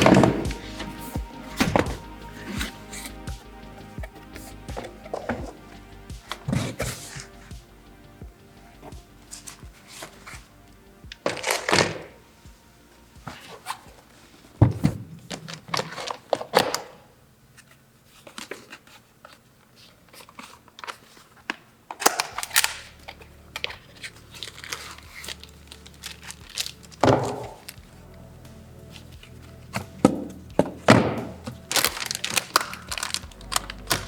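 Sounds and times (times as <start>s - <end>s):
packaging crinkling and rustling: 11.1s - 12.3s, 13.3s - 34.0s
packaging tearing: 11.2s - 12.2s, 20.2s - 27.8s, 28.9s - 34.0s.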